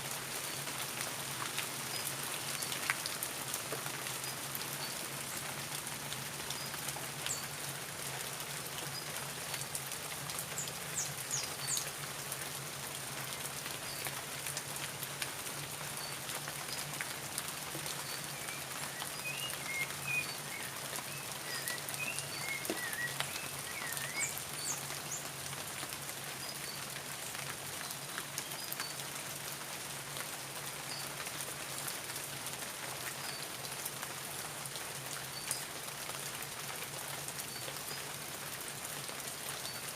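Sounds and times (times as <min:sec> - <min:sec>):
rain pattering: 0:00.0 - 0:39.9
bird chirping: 0:18.1 - 0:24.8.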